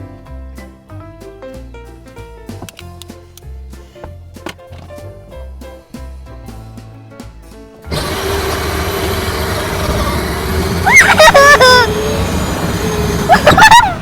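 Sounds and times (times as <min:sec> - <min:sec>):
background music with beat: 0:00.0 - 0:07.9
toy car motor whine: 0:07.9 - 0:14.0
wheels rolling: 0:07.9 - 0:14.0.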